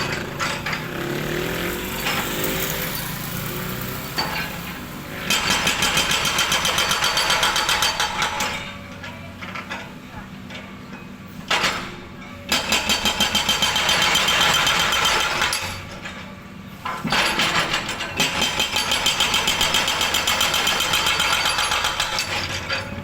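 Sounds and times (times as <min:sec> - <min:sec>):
jackhammer hammering: 0:00.0 - 0:08.7, 0:12.5 - 0:15.8, 0:17.0 - 0:23.0.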